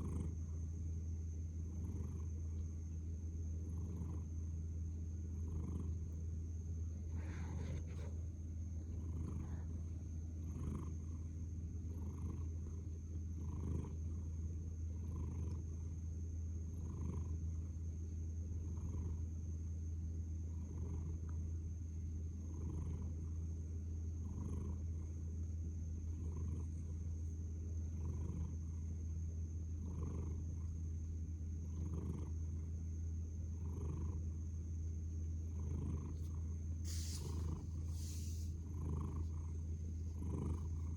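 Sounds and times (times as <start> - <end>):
cat snoring softly: 0.0 - 0.5, 1.6 - 2.4, 3.6 - 4.5, 5.3 - 6.2, 7.0 - 16.0, 16.7 - 17.7, 18.6 - 19.4, 20.5 - 21.4, 22.4 - 23.4, 24.2 - 25.2, 26.0 - 27.1, 27.9 - 28.8, 29.8 - 30.8, 31.6 - 32.7, 33.5 - 34.4, 35.4 - 40.9
steady low hum: 0.0 - 40.9.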